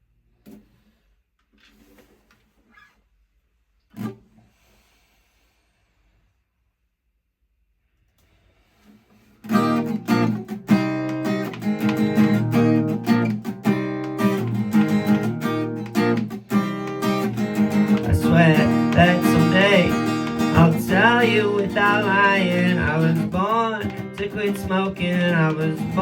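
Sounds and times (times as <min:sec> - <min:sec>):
acoustic guitar strumming chords: 0:09.4 - 0:26.0
person singing: 0:17.7 - 0:26.0.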